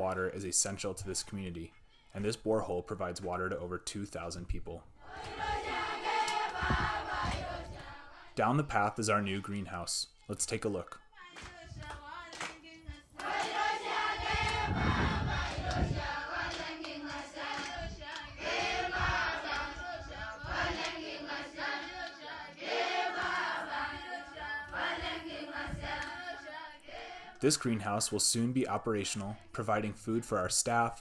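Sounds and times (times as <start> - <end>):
group singing together: 5.0 - 8.6, 11.4 - 28.0.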